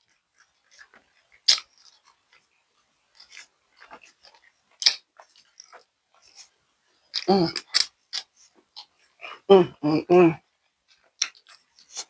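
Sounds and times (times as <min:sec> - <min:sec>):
person chewing: 0:07.2 - 0:07.8
lip smacks: 0:07.2 - 0:07.9.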